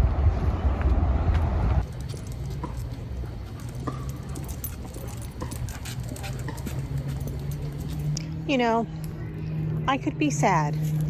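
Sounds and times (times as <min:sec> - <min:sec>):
low rumble: 0:00.0 - 0:01.8
dog collar tags jingling: 0:01.9 - 0:08.2.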